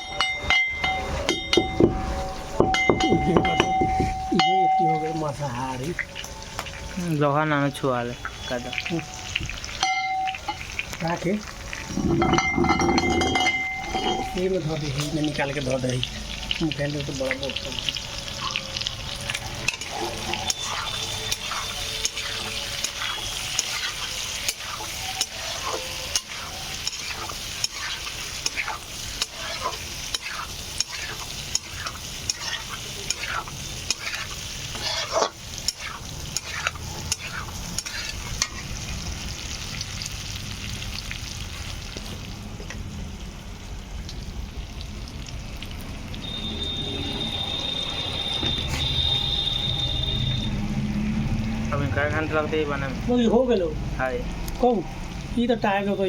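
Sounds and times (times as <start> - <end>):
meat sizzling in a pan: 0.0 - 56.0
metal spoon scraping a pan: 11.6 - 15.6, 17.2 - 39.0
steady high tone: 46.2 - 50.8.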